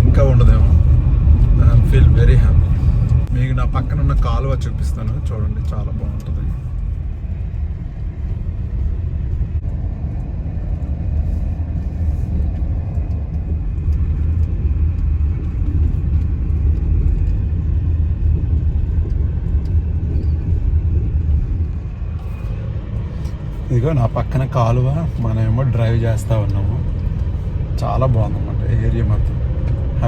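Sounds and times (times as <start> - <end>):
vehicle rumble on road: 0.0 - 30.0.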